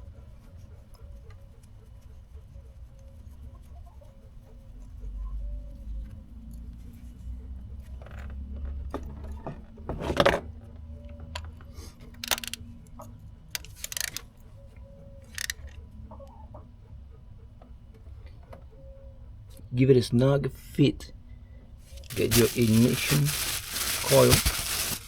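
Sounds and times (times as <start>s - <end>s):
metal socket clinking and rattling: 12.2s - 12.6s, 13.6s - 14.3s, 15.3s - 15.8s.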